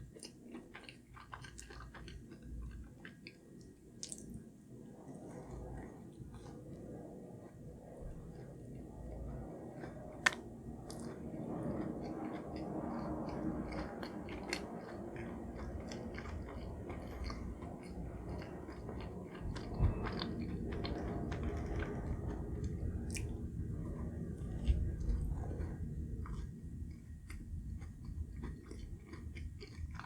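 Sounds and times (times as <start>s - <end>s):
chewing and biting: 0.1s - 4.4s, 9.1s - 30.0s
wet mouth clicks: 4.0s - 4.4s.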